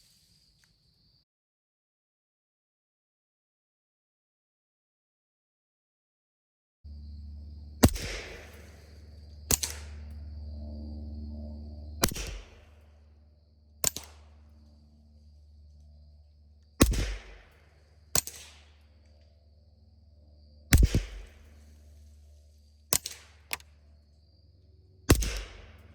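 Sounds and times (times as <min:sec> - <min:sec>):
low hum: 0:06.9 - 0:25.9
suppressed pistol shots: 0:07.8 - 0:08.8, 0:09.5 - 0:10.1, 0:12.0 - 0:12.6, 0:13.8 - 0:14.4, 0:16.8 - 0:18.8, 0:20.7 - 0:21.5, 0:22.9 - 0:23.6, 0:25.1 - 0:25.8.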